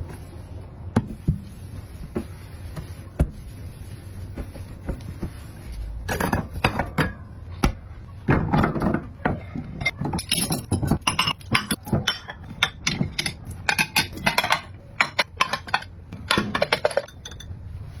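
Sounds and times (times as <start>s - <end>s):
dishes and cutlery clinking: 8.5s - 17.5s.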